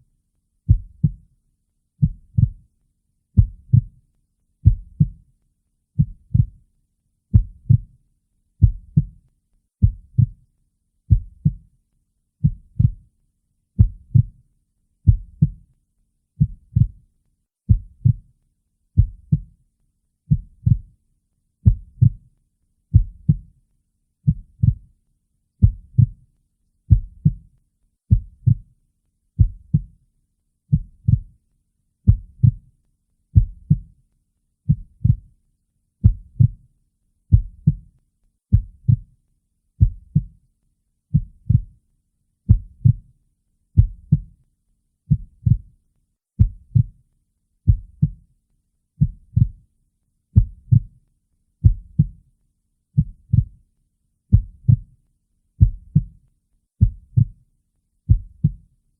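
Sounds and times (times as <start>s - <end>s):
heartbeat: 0.7s - 1.2s, 2.0s - 2.6s, 3.4s - 4.0s, 4.6s - 5.2s, 6.0s - 6.6s, 7.3s - 7.9s, 8.6s - 9.2s, 9.8s - 10.4s, 11.1s - 11.6s, 12.4s - 13.0s, 13.8s - 14.4s, 15.0s - 15.6s, 16.4s - 17.0s, 17.7s - 18.3s, 19.0s - 19.5s, 20.3s - 20.9s, 21.6s - 22.2s, 22.9s - 23.5s, 24.3s - 24.9s, 25.6s - 26.2s, 26.9s - 27.4s, 28.1s - 28.7s, 29.4s - 29.9s, 30.7s - 31.3s, 32.1s - 32.6s, 33.4s - 33.9s, 34.7s - 35.3s, 36.0s - 36.6s, 37.3s - 37.9s, 38.5s - 39.1s, 39.8s - 40.3s, 41.1s - 41.7s, 42.5s - 43.0s, 43.8s - 44.3s, 45.1s - 45.7s, 46.4s - 47.0s, 47.7s - 48.2s, 49.0s - 49.6s, 50.4s - 50.9s, 51.6s - 52.2s, 53.0s - 53.6s, 54.3s - 54.9s, 55.6s - 56.2s, 56.8s - 57.4s, 58.1s - 58.6s.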